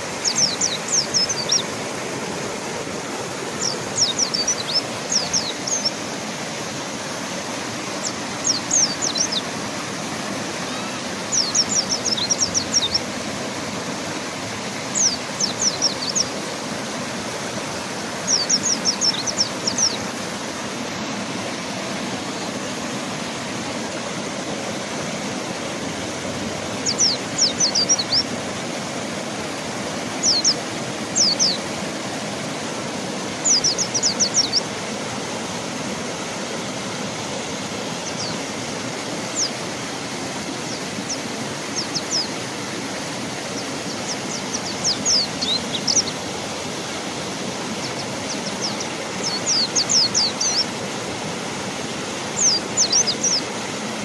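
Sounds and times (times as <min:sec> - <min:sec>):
rushing river water: 0:00.0 - 0:54.0
bird calling high notes: 0:10.6 - 0:13.2.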